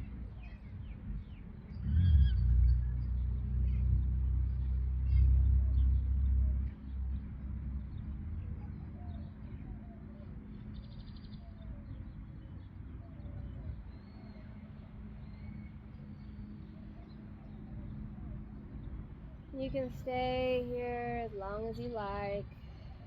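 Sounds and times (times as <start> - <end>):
low rumble: 0.0 - 9.3.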